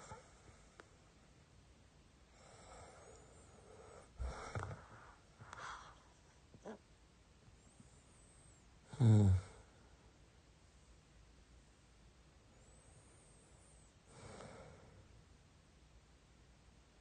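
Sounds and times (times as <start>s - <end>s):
man snoring: 8.9s - 9.7s.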